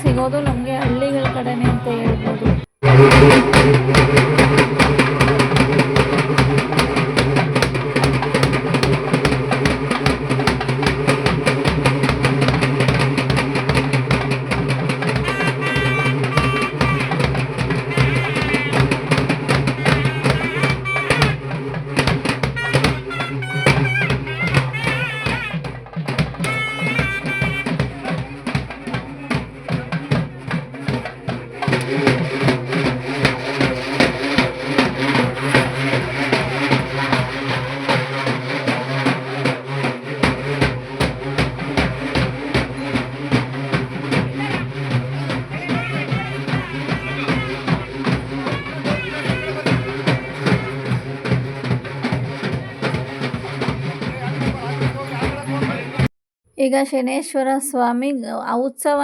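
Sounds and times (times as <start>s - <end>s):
drums beating fast: 0.0s - 56.1s
high wavering melody: 15.2s - 21.6s, 22.3s - 25.6s, 26.4s - 28.0s.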